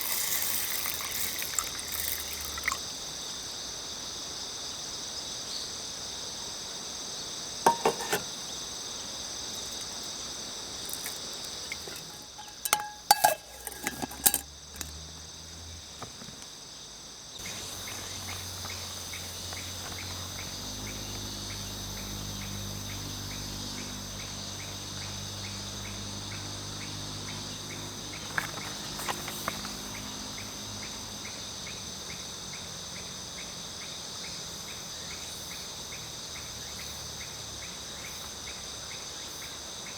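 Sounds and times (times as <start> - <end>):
crickets chirping: 0.0 - 39.9
metal utensils clinking on cookware: 7.7 - 8.3, 10.9 - 15.0.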